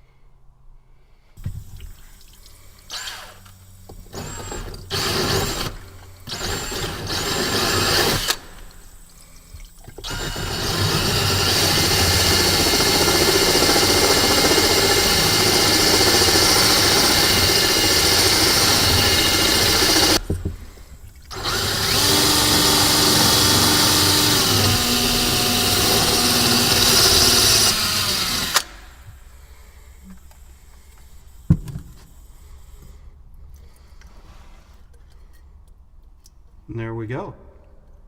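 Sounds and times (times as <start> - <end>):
drill grinding into wet glass: 2.9 - 8.4, 10.0 - 20.3, 21.3 - 28.7.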